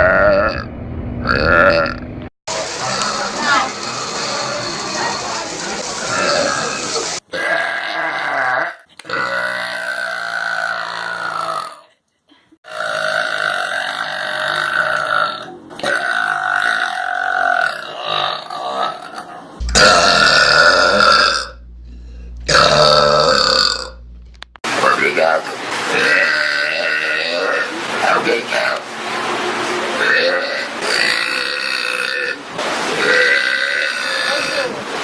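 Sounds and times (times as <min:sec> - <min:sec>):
long drawn-out burps: 0:00.0 - 0:02.0, 0:06.0 - 0:11.9, 0:12.6 - 0:24.0, 0:30.0 - 0:32.4, 0:33.0 - 0:34.8.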